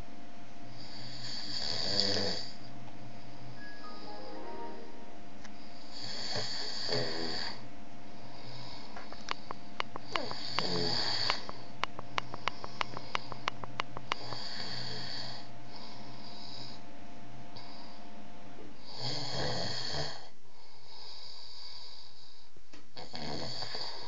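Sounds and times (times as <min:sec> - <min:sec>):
man snoring: 0:00.8 - 0:02.6, 0:05.9 - 0:07.6, 0:10.0 - 0:11.5, 0:14.1 - 0:16.8, 0:18.8 - 0:20.3, 0:23.0 - 0:24.0
low hum: 0:02.6 - 0:06.0
sharp clicks: 0:09.1 - 0:14.5.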